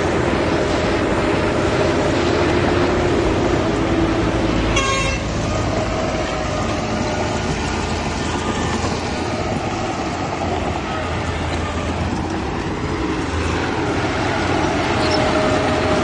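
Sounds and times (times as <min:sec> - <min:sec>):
heavy machinery engines running: 0:00.0 - 0:16.0
vehicle horn toot: 0:04.7 - 0:05.3.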